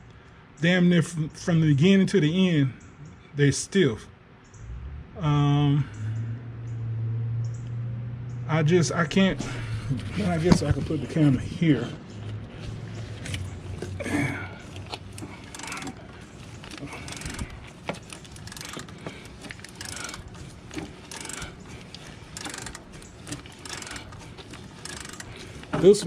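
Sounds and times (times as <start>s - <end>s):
socket ratchet clicking: 17.0s - 25.6s.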